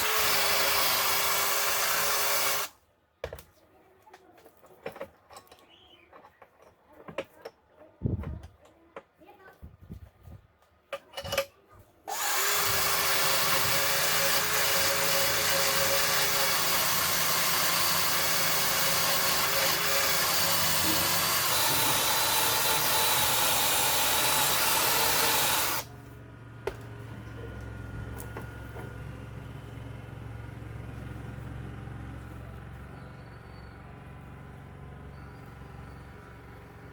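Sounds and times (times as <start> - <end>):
power tool running with whine: 0.0 - 2.7, 12.1 - 25.9.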